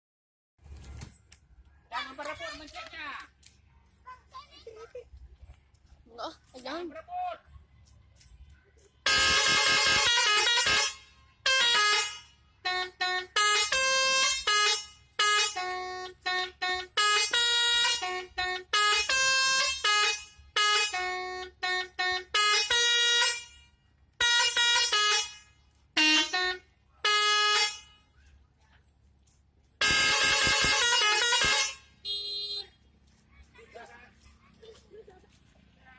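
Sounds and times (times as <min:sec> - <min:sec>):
bus musical horn tooting: 0:09.0 - 0:28.0, 0:29.8 - 0:32.8.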